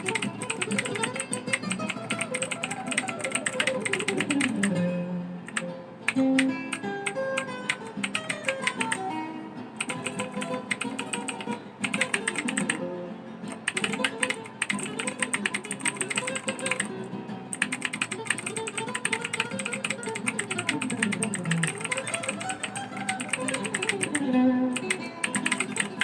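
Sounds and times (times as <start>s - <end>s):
keyboard typing clicks: 0.0s - 4.8s, 5.5s - 9.0s, 9.8s - 12.8s, 13.5s - 26.0s
guitar music: 0.0s - 26.0s.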